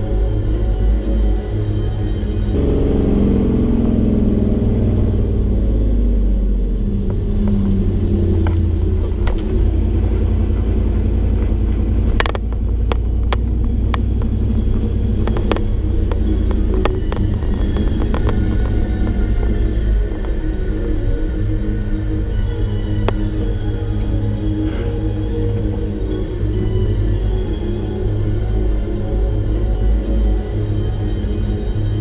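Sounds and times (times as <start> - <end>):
engine deep rumble: 0.0 - 32.0
sharp clicks or rattles: 11.4 - 19.5.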